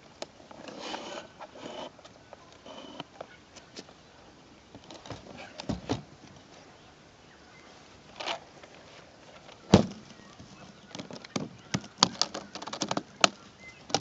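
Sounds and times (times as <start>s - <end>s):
soft brushing: 7.6s - 9.5s.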